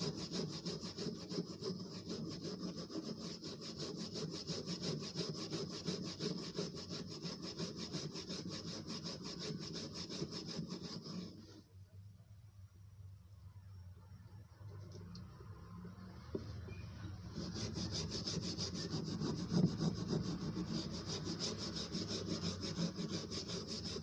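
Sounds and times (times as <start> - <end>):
sponge scrubbing sharpening stone: 17.3 - 24.0.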